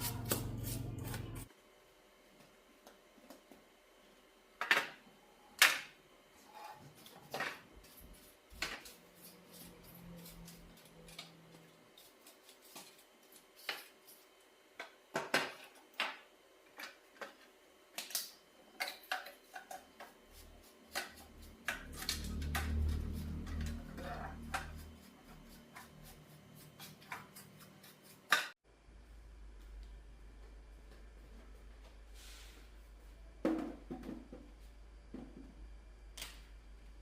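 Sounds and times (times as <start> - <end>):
low hum: 0.0 - 1.5, 21.2 - 26.2.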